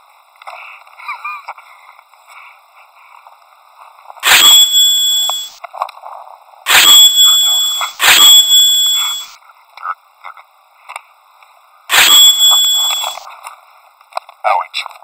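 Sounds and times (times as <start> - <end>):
high-pitched dings: 6.7 - 9.3.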